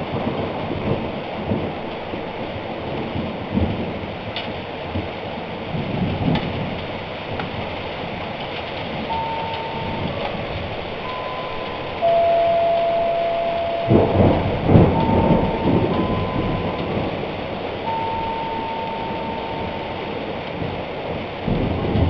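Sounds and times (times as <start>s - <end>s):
low thunder rumble: 0.0s - 22.0s
steady rain falling: 0.0s - 22.0s
steady single-pitch tones: 9.1s - 20.4s.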